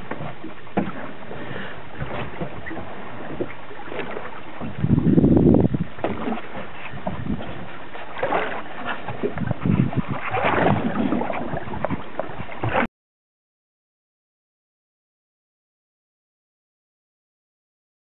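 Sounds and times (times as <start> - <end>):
rushing water: 0.0 - 12.9
wind buffeting microphone: 0.0 - 12.9.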